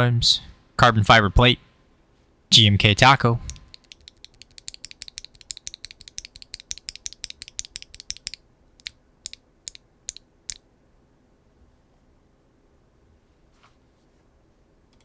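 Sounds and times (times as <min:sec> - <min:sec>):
clacky mechanical keyboard typing: 0:03.5 - 0:08.9.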